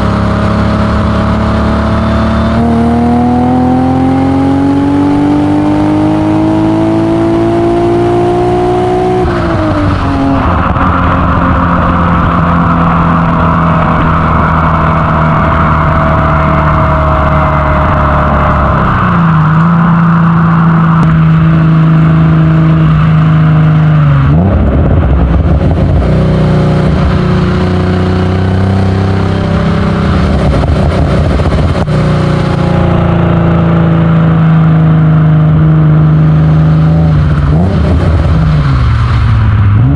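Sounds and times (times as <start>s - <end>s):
car exhaust while driving: 0.0s - 39.9s.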